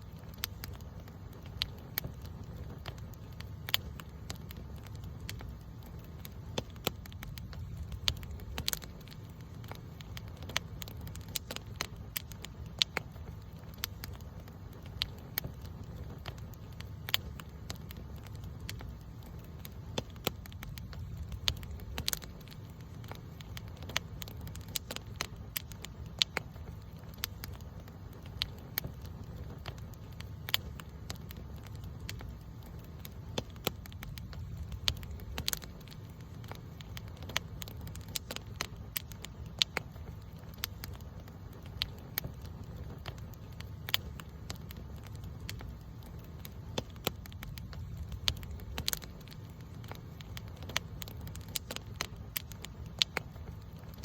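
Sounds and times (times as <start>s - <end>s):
low fire rumble: 0.0s - 54.0s
wood crackling and popping: 0.0s - 54.0s.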